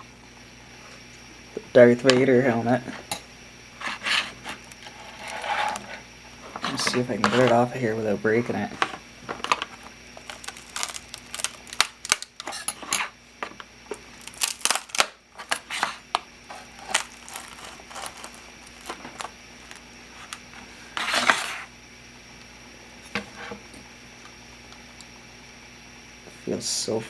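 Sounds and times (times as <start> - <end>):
plastic rasp: 3.8 - 6.0, 14.3 - 21.7
plastic print cracking and creaking: 4.5 - 5.9, 9.6 - 12.7, 14.2 - 20.4.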